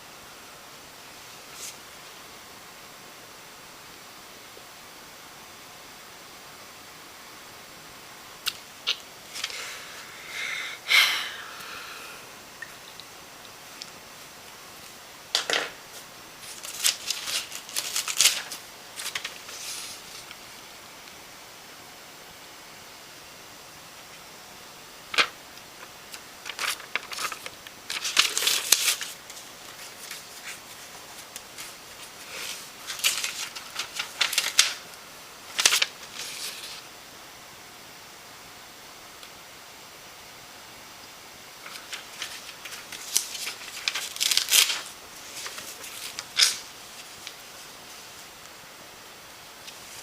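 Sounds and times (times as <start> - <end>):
steady hiss: 0.0 - 50.0
rustling and crinkling: 13.7 - 20.4, 25.1 - 36.9, 41.6 - 48.4, 49.6 - 50.0.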